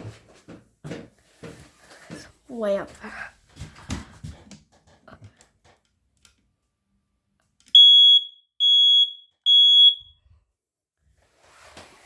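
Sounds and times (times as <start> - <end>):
smoke alarm beeps: 7.8 - 10.2.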